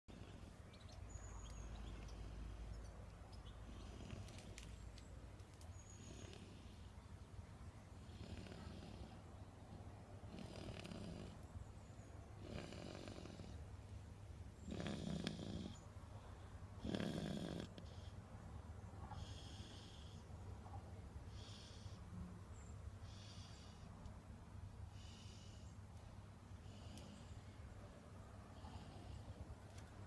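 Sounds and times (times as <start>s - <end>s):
person snoring: 14.7s - 15.8s.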